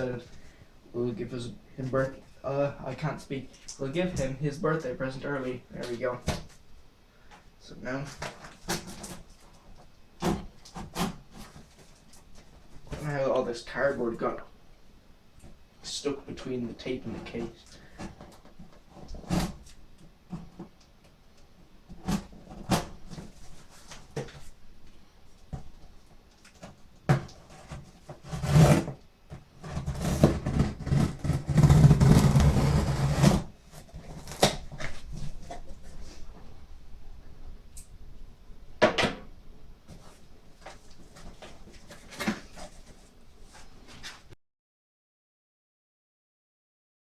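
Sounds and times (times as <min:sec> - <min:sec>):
cardboard knocks and scrapes: 0:26.6 - 0:36.0.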